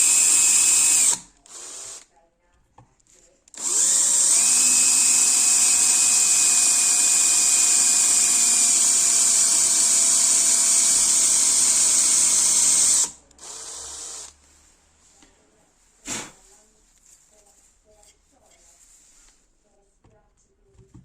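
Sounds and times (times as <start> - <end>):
electric drill running: 0.0 - 2.0, 3.6 - 14.4.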